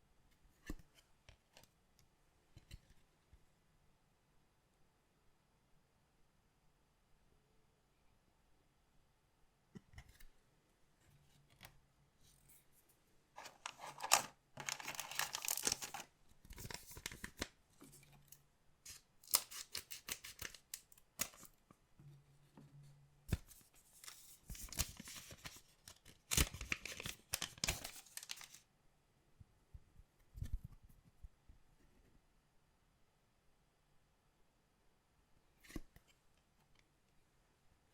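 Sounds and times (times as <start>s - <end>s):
card wrappers tearing: 13.4s - 17.4s, 18.9s - 21.4s, 26.3s - 28.6s
wrapper rustling: 13.4s - 17.4s, 26.3s - 28.6s.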